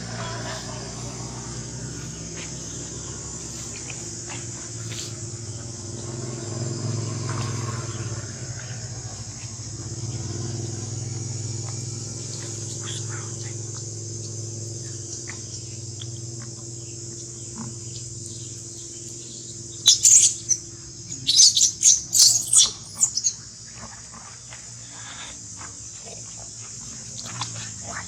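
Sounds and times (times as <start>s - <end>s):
high-pitched insect drone: 0.0s - 28.0s
shrill squeaking calls: 19.7s - 23.4s.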